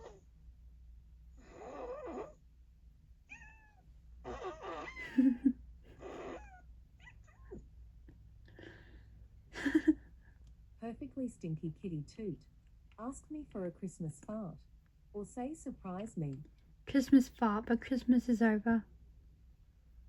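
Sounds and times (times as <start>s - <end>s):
fart noises: 1.5s - 2.4s, 4.2s - 5.0s, 5.9s - 6.4s
cat meowing: 3.3s - 5.4s, 6.0s - 7.6s.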